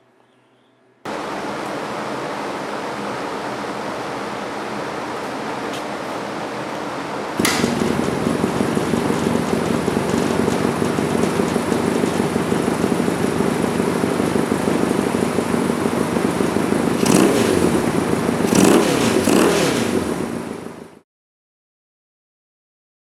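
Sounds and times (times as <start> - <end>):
motorcycle engine idling: 7.4 - 21.0
motorcycle engine revving: 7.4 - 21.0.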